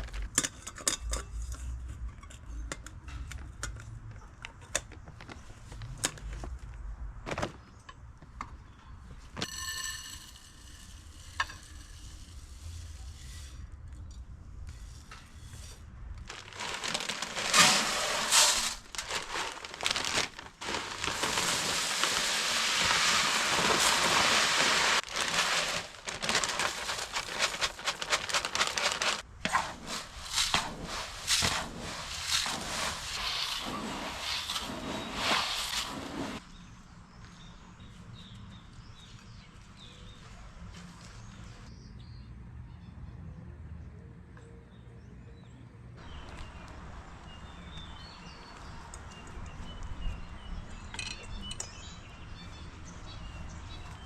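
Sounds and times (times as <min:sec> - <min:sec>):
bag crinkling: 0:16.2 - 0:36.2
seeds pouring rattling hiss: 0:16.3 - 0:36.4.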